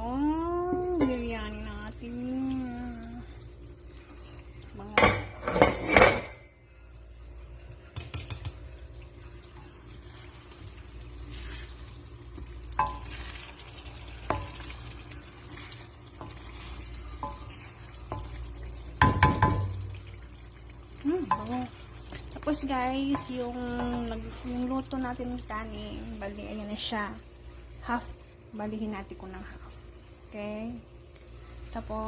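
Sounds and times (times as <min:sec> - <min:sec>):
low sizzle from pot: 0:00.0 - 0:32.0
metal utensils clattering on pot: 0:04.9 - 0:06.4.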